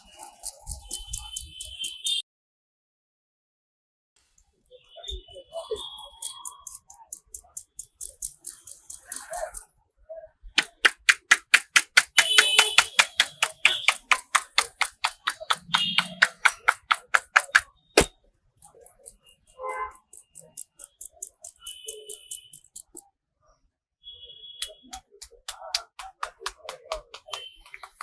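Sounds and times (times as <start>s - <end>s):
hands tapping head: 10.6s - 18.1s, 24.6s - 28.0s.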